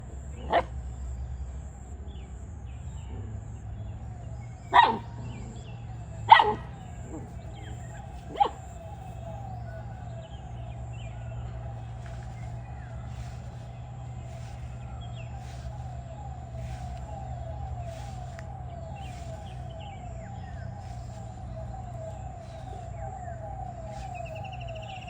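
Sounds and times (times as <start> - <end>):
puppy barking: 0.4 - 0.7, 4.7 - 5.1, 6.3 - 7.2, 8.3 - 8.6.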